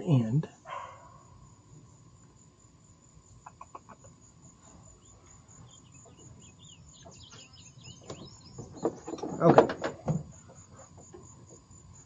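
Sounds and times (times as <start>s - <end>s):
high insect trill: 0.0s - 12.0s
faint chirps: 0.6s - 9.1s.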